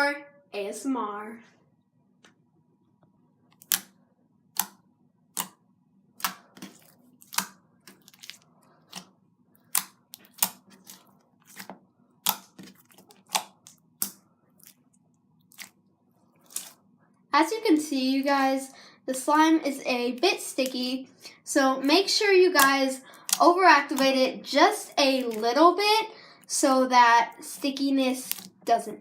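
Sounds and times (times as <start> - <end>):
sticky slime clicks and pops: 3.6 - 3.9, 4.6 - 4.8, 5.4 - 5.6, 6.2 - 9.0, 9.7 - 10.6, 11.5 - 14.2.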